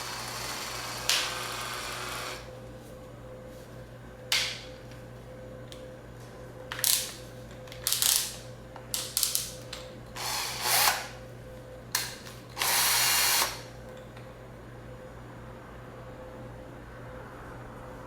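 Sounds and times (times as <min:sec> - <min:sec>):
cordless drill running: 0:00.0 - 0:02.5, 0:10.2 - 0:11.2, 0:12.6 - 0:13.7.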